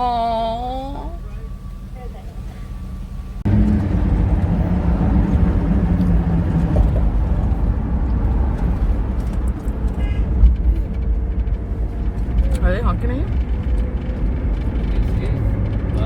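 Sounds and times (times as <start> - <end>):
road and engine noise in car: 0.0 - 16.0.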